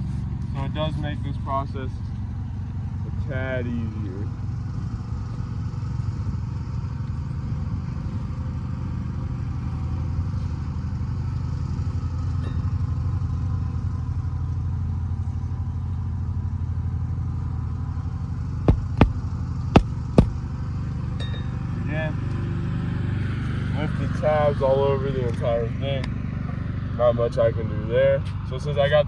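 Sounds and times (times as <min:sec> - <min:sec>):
low engine drone: 0:00.0 - 0:29.0
hammer striking nails: 0:18.7 - 0:20.4.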